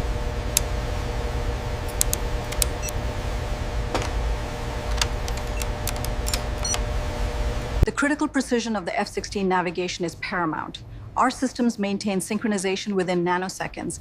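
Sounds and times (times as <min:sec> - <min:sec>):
low machinery hum: 0:00.0 - 0:14.0
sharp clicks and ticks: 0:01.9 - 0:03.0.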